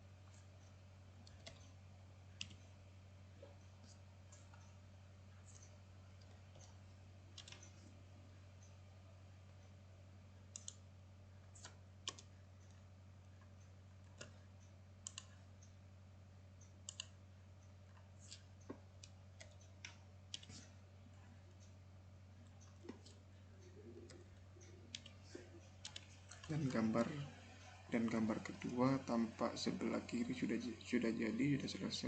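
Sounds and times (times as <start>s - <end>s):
faint low hum: 0.0s - 32.0s
computer mouse clicks: 0.2s - 1.8s, 2.4s - 2.7s, 5.4s - 7.9s, 10.5s - 10.8s, 11.5s - 12.8s, 13.4s - 15.8s, 16.6s - 20.8s, 22.4s - 28.8s
key presses: 7.4s - 7.7s.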